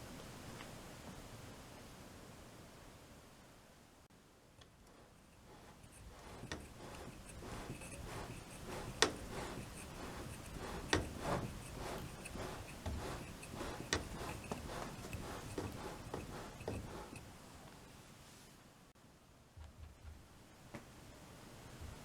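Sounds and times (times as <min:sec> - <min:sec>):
clothes dryer humming: 0:04.7 - 0:17.6.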